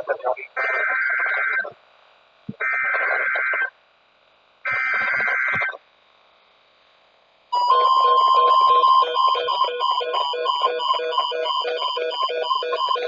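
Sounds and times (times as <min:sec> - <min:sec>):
warbling digital data bursts: 0:00.0 - 0:01.8, 0:02.6 - 0:03.8, 0:04.6 - 0:05.8.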